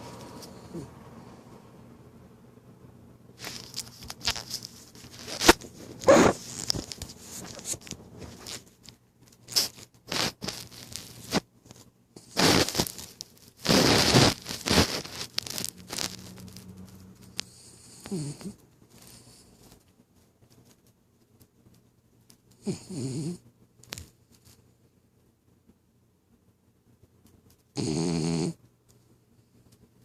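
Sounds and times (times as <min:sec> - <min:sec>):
dog snoring: 0:00.4 - 0:01.0, 0:05.4 - 0:06.4, 0:12.2 - 0:13.0, 0:13.6 - 0:15.3, 0:17.4 - 0:19.6, 0:22.6 - 0:23.4, 0:27.8 - 0:28.6.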